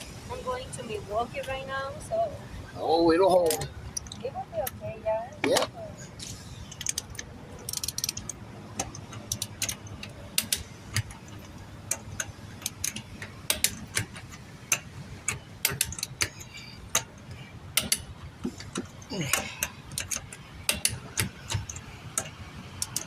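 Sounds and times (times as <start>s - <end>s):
ratcheting wrench clicking: 6.6s - 23.0s.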